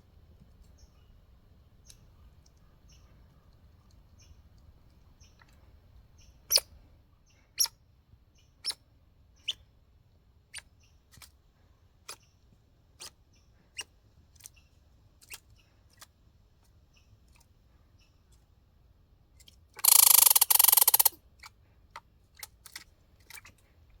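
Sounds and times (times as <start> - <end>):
squirrel clicking: 19.8 - 21.2
squirrel harsh rapid pulses: 19.8 - 21.2.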